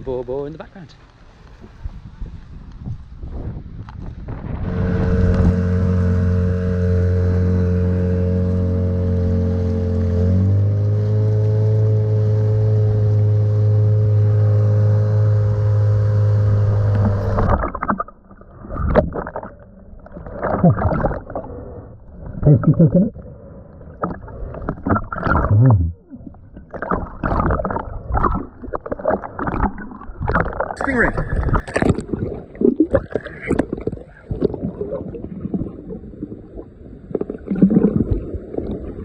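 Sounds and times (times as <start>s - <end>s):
knocks and splashes: 4.0s - 21.6s, 24.0s - 36.4s
boat motor running: 4.2s - 21.6s, 23.9s - 33.9s.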